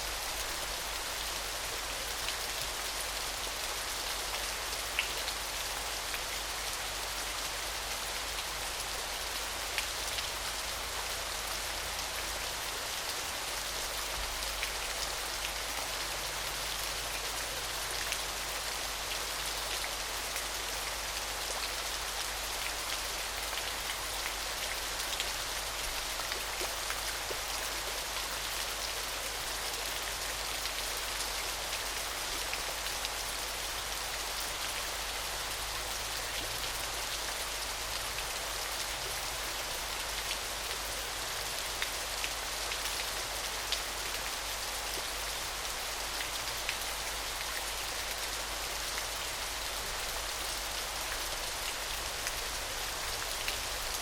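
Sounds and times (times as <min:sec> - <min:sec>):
small waterfall splashing: 0:00.0 - 0:54.0.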